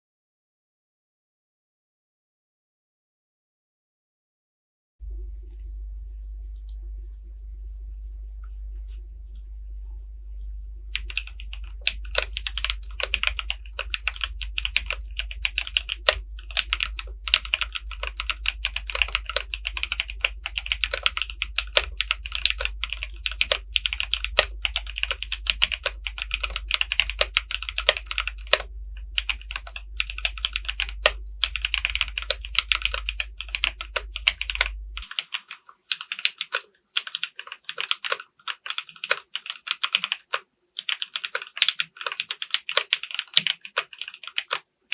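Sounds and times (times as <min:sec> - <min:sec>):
fast typing on mechanical keyboard: 0:10.9 - 0:44.6.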